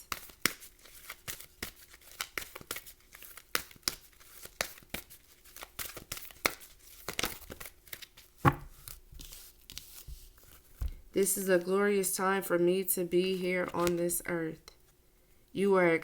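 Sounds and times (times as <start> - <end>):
cards shuffling and snapping: 0.0 - 11.0, 13.6 - 14.0.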